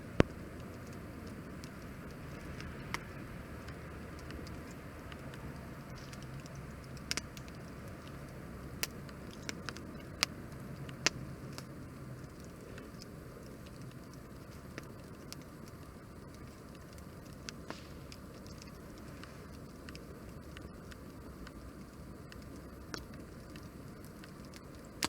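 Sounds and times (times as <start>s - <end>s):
burning wood crackling pops: 0.0s - 25.0s
campfire flame hissing: 0.0s - 25.0s.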